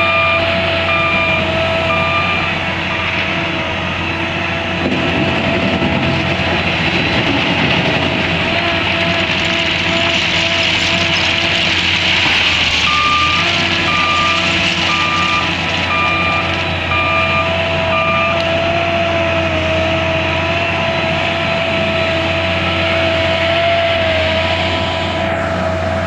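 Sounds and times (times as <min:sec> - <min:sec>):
reversing alarm beeps: 0:00.0 - 0:03.2, 0:12.8 - 0:18.4
diesel engine with high whine: 0:00.0 - 0:26.0.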